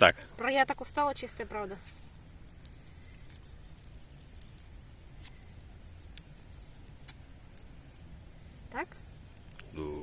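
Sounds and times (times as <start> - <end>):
dry twigs snapping and clicking: 1.8 - 7.8, 9.3 - 9.8.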